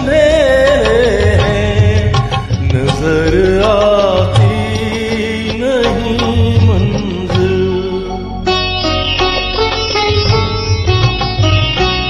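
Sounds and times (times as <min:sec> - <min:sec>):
low drum beat: 0:00.0 - 0:08.3
person singing: 0:00.0 - 0:09.1.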